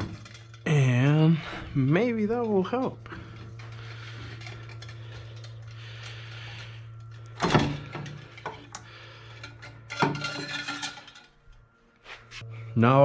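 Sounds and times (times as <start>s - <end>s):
pipe clunk and clatter: 0.0s - 0.8s, 2.4s - 11.4s.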